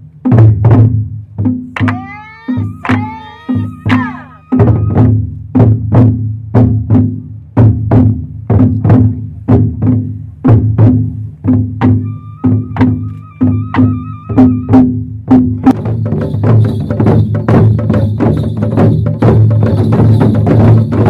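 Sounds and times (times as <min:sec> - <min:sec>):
wood-block percussion beat: 0:00.0 - 0:21.0
held higher tone: 0:01.9 - 0:05.2, 0:11.8 - 0:15.0.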